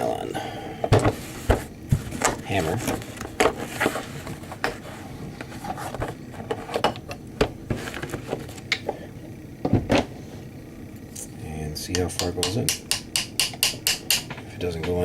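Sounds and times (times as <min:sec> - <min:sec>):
hand tools knocking and clicking: 0:11.9 - 0:15.0.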